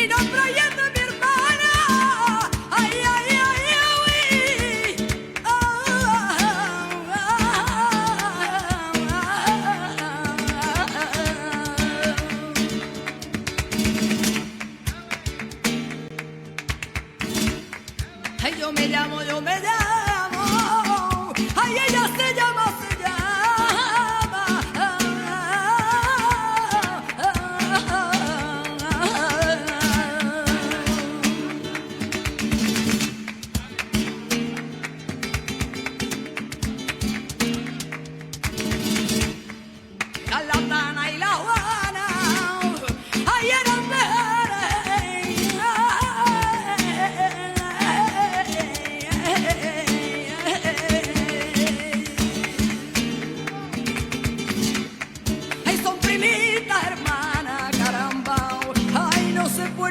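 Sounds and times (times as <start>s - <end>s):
guitar strumming and plucking: 0.0s - 59.9s
person singing: 40.4s - 53.8s, 55.8s - 59.9s.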